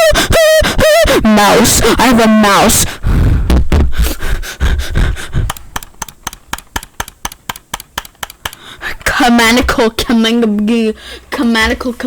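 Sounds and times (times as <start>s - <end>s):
computer mouse clicking rapidly: 4.9s - 8.7s.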